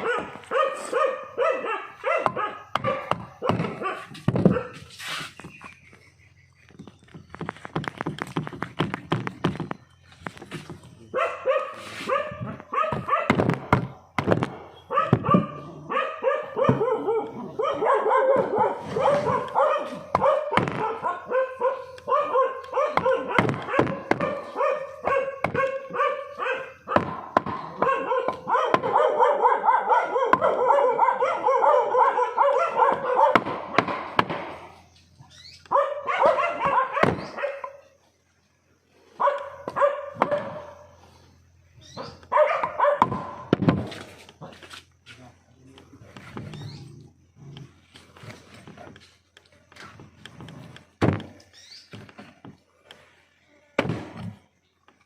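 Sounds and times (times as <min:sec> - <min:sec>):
dog barking and yelping: 0:00.0 - 0:05.1, 0:11.0 - 0:13.7, 0:14.5 - 0:34.0, 0:35.3 - 0:38.0, 0:39.2 - 0:41.0, 0:41.9 - 0:44.0
sharp knocks: 0:32.9 - 0:34.7.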